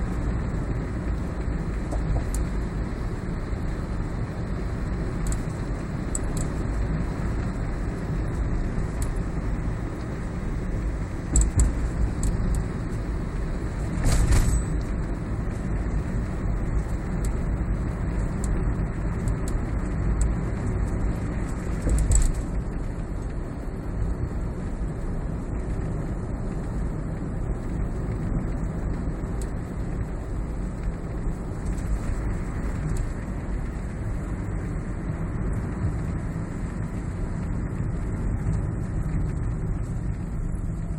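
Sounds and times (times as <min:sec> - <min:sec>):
car interior road noise: 0:00.0 - 0:40.9
faint clicks and rattles: 0:16.2 - 0:23.4.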